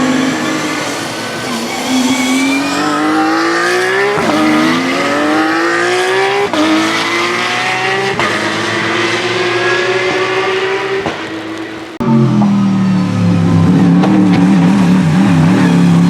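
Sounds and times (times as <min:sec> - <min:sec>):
race car engine accelerating: 0:00.0 - 0:16.0.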